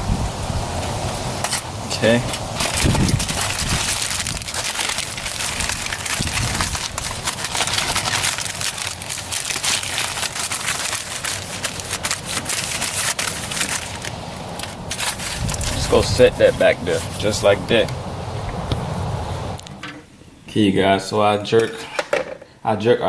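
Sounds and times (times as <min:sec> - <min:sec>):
aluminium foil crinkling: 0:01.4 - 0:17.9.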